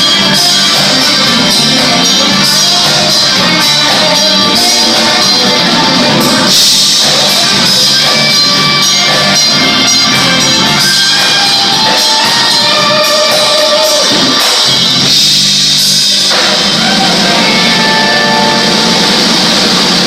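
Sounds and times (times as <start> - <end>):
person singing: 0.0 - 14.6
live rock band playing: 0.0 - 20.0.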